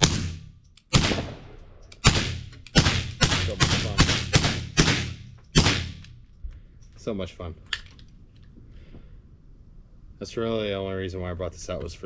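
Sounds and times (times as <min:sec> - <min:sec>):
suppressed pistol shots: 0:00.0 - 0:06.2.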